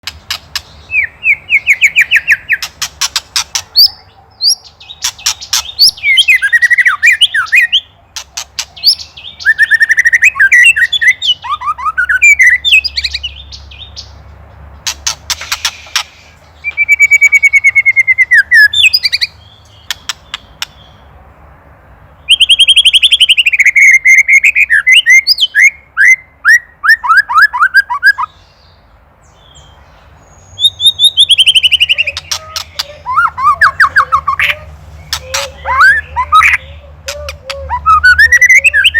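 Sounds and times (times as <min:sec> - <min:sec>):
bird alarm rattle: 0:02.4 - 0:04.0, 0:14.8 - 0:16.3
bird whistled notes: 0:08.8 - 0:13.2, 0:30.5 - 0:32.4, 0:37.6 - 0:38.9.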